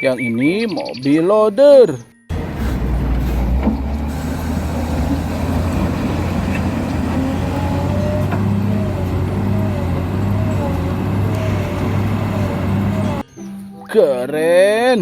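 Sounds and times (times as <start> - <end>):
low mechanical hum: 2.3 - 13.2.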